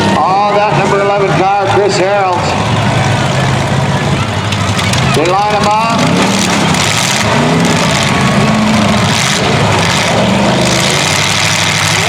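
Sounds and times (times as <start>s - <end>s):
car engines revving: 0.0s - 12.0s.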